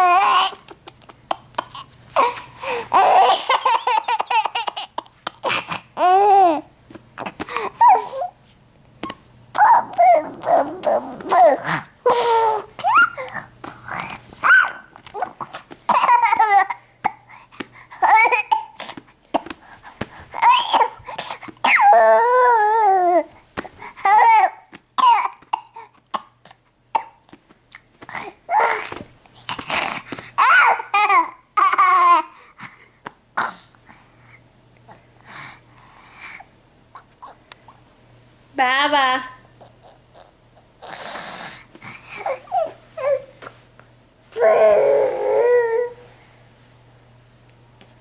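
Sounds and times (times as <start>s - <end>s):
baby babbling: 0.0s - 0.7s, 2.2s - 8.4s, 9.5s - 17.2s, 18.0s - 18.8s, 20.4s - 23.3s, 24.0s - 25.8s, 44.4s - 46.0s
baby fake laughing: 3.0s - 6.6s, 14.4s - 16.8s
baby fake coughing: 12.8s - 17.3s, 18.0s - 19.6s, 20.4s - 21.8s, 24.0s - 27.2s.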